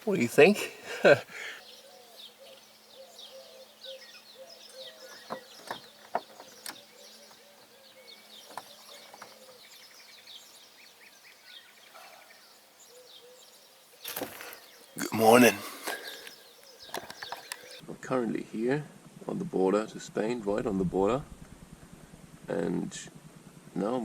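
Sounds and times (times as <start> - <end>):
small birds chirping: 0.0 - 17.8
sharp clicks: 15.9 - 17.8.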